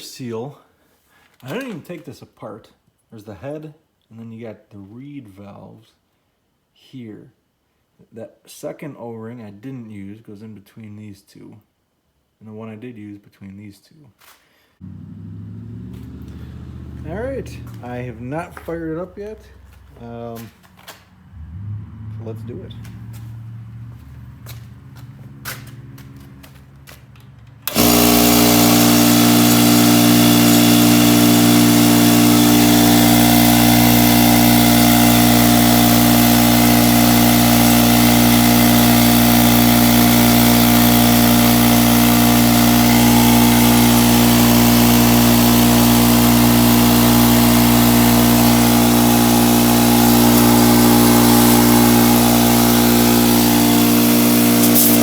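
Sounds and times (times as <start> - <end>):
air compressor running: 16.0 - 20.4, 27.6 - 55.0.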